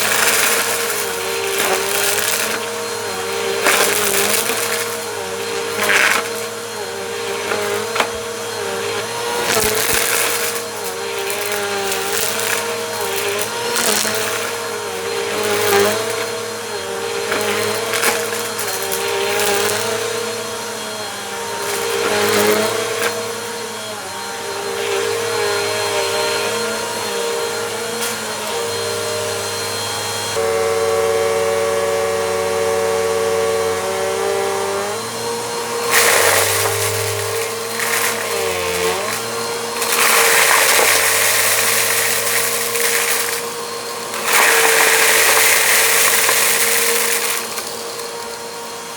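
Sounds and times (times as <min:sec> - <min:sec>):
dirt rattling up nozzle: 0:00.0 - 0:23.7, 0:34.3 - 0:48.9
vacuum cleaner running: 0:00.0 - 0:48.9.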